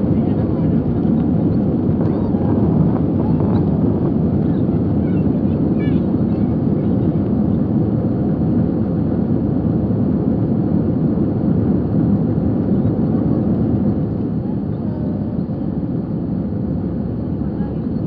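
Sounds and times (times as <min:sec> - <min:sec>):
jet engines and airflow rumble: 0:00.0 - 0:18.0.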